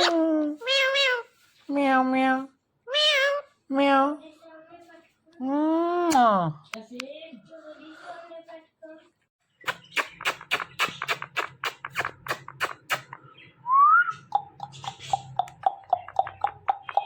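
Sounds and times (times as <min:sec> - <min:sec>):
parrot clicking: 0:14.2 - 0:17.0.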